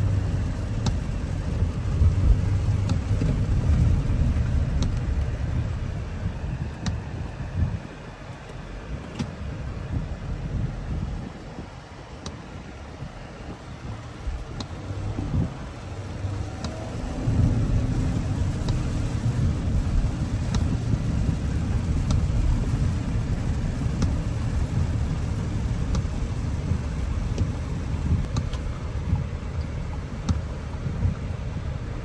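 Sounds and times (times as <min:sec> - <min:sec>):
car engine low rumble: 0:00.0 - 0:32.0
road noise: 0:00.0 - 0:32.0
faint clicks: 0:16.3 - 0:28.7.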